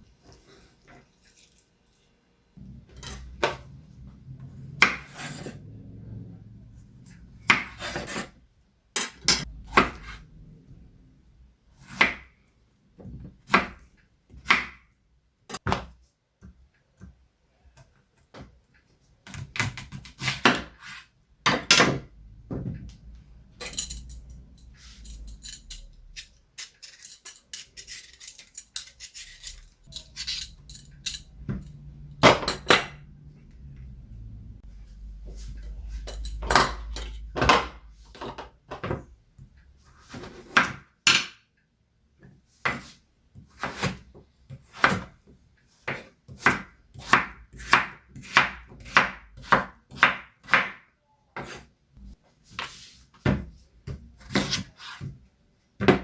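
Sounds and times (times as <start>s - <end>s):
utensils knocking and scraping: 21.5s - 33.1s.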